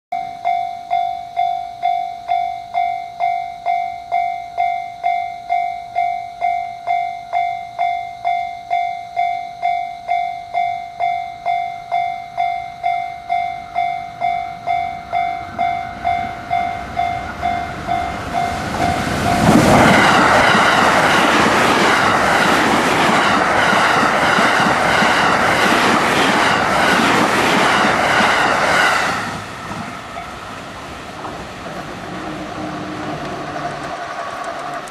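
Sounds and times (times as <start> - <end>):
level crossing alarm ringing: 0.1 - 29.2
train rushing past: 14.6 - 34.9
wheels clicking over rail joints: 31.1 - 34.9.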